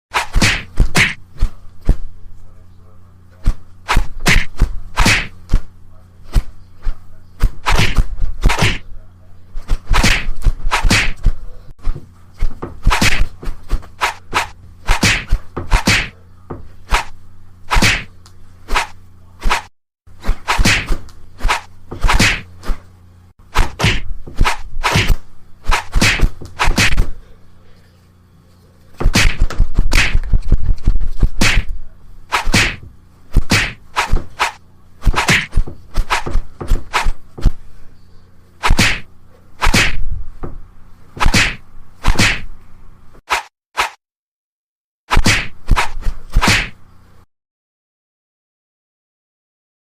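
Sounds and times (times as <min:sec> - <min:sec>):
cartoon punch and kick hits: 0:00.1 - 0:01.2, 0:03.9 - 0:05.6, 0:07.4 - 0:08.8, 0:09.7 - 0:11.3, 0:12.6 - 0:13.4, 0:14.0 - 0:16.1, 0:17.7 - 0:18.1, 0:20.3 - 0:22.5, 0:23.5 - 0:27.1, 0:29.0 - 0:30.5, 0:31.2 - 0:31.7, 0:32.3 - 0:37.6, 0:38.6 - 0:40.6, 0:41.2 - 0:42.5, 0:43.3 - 0:44.0, 0:45.1 - 0:46.8
short swishes: 0:00.1 - 0:02.0, 0:03.4 - 0:05.6, 0:06.2 - 0:08.9, 0:09.6 - 0:16.2, 0:16.9 - 0:18.1, 0:18.7 - 0:22.9, 0:23.5 - 0:27.1, 0:29.0 - 0:31.7, 0:32.3 - 0:37.6, 0:38.6 - 0:40.1, 0:41.2 - 0:42.5, 0:43.3 - 0:44.0, 0:45.1 - 0:46.8.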